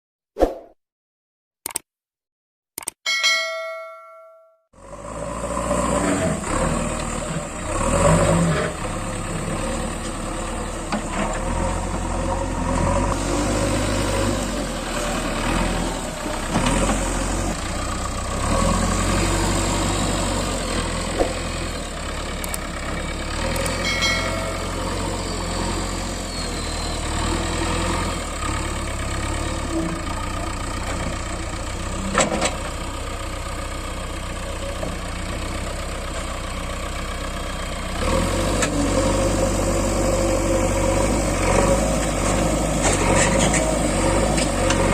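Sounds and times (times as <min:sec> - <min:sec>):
sharp metallic clanks: 0:03.1 - 0:04.6, 0:23.6 - 0:25.4
diesel engine running: 0:04.8 - 0:44.9.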